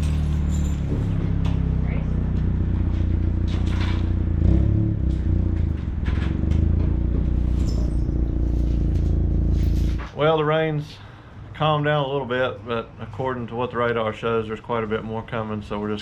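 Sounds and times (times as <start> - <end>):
vehicle engine running: 0.0 - 10.1
clatter and rattles: 0.0 - 10.2.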